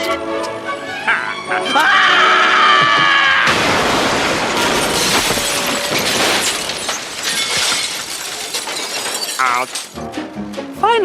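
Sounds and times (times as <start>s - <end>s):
debris clattering and tinkling: 3.5s - 10.1s
glass shattering: 3.5s - 10.1s.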